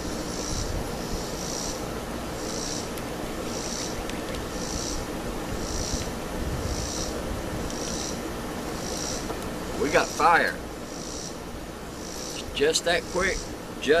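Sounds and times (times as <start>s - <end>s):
wind buffeting the microphone: 4.2s - 7.8s.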